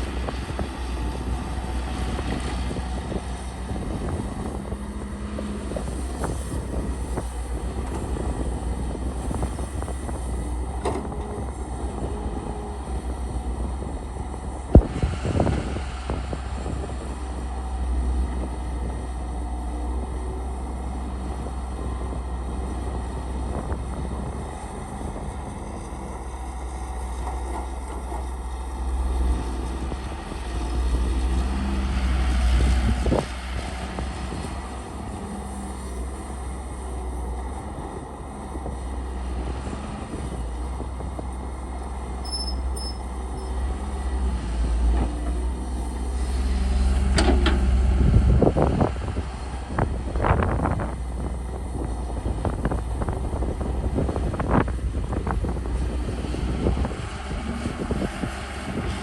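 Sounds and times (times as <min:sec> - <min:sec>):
excavator diesel engine rumbling: 0:00.0 - 0:59.0.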